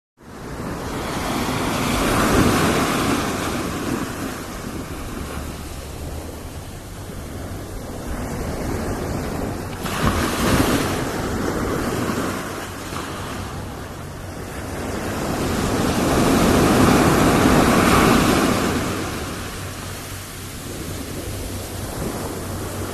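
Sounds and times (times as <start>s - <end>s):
ocean waves breaking: 0.2s - 22.9s.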